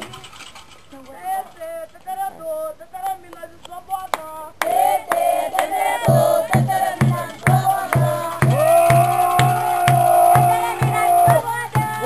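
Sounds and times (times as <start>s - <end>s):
drum beating steadily: 4.6s - 12.0s
group chanting: 4.6s - 12.0s.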